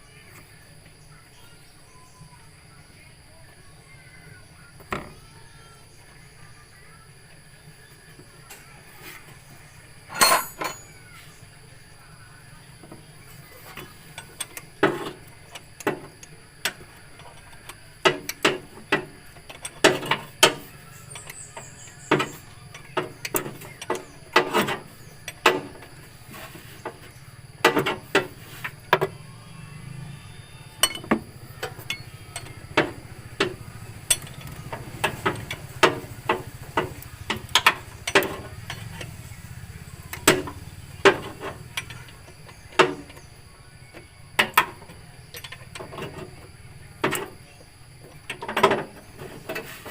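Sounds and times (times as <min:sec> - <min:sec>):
hand tools clinking against metal: 0:10.1 - 0:11.0, 0:30.6 - 0:43.3, 0:43.9 - 0:49.9.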